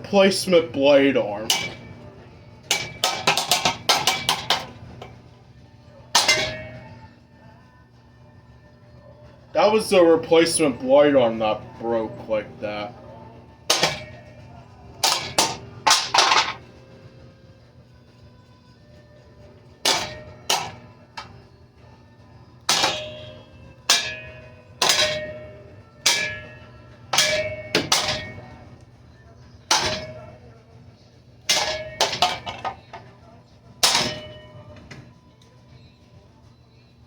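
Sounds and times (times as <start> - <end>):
low steady hum: 0.0 - 37.0
metal pole clanging on ceiling fan: 1.4 - 5.2, 6.2 - 7.0, 13.7 - 16.7, 19.8 - 21.5, 22.7 - 28.8, 29.7 - 30.5, 31.4 - 35.1.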